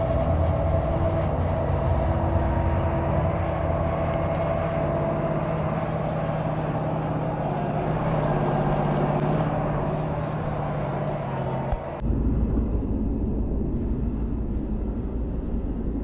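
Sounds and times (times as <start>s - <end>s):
motor running steadily: 0.0s - 12.0s.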